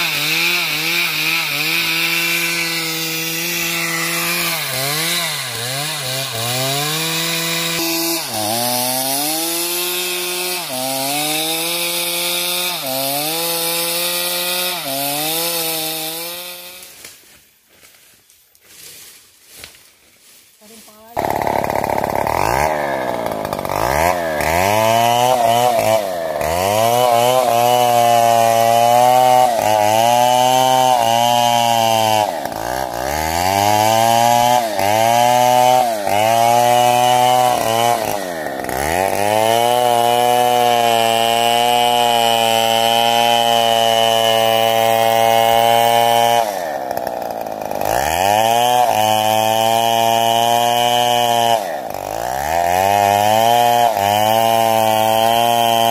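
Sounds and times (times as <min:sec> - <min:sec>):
chainsaw cutting wood: 0:00.0 - 0:17.4, 0:20.7 - 0:55.9.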